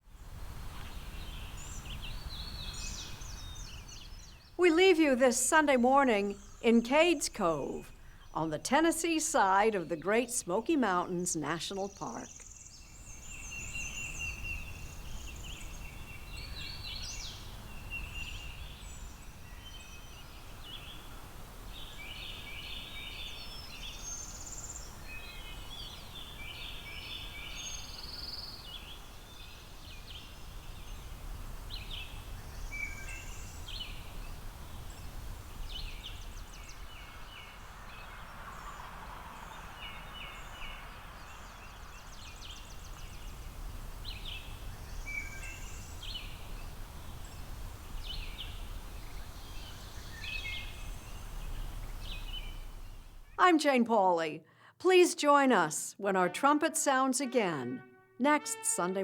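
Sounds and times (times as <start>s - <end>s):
birds chirping and singing: 39.4s - 53.4s
low steady rumble: 45.8s - 53.4s.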